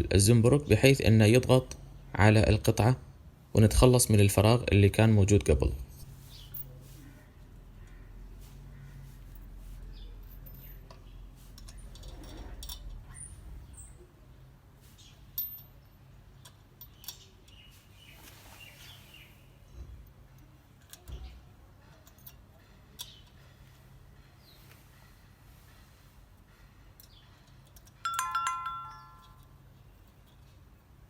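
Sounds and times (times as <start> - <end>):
small metal clicks and clinks: 10.2 - 13.2, 15.3 - 17.6, 20.4 - 23.4, 27.0 - 30.6.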